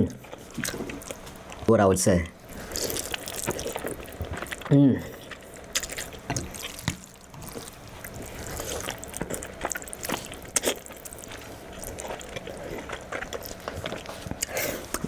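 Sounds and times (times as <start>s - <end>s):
slurping and chewing noodles: 0.2s - 1.7s, 2.4s - 15.0s.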